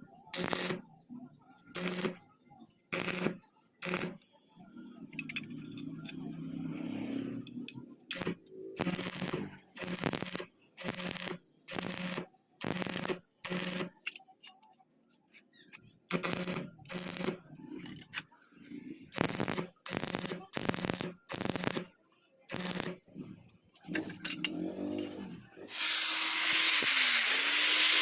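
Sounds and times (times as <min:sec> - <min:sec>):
hand tool scraping steel: 0:16.2 - 0:18.3.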